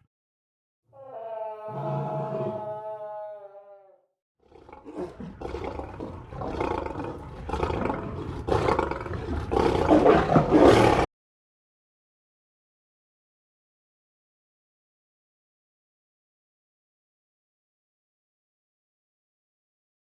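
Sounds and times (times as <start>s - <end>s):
lion growling and roaring: 1.0s - 3.8s, 4.4s - 11.1s.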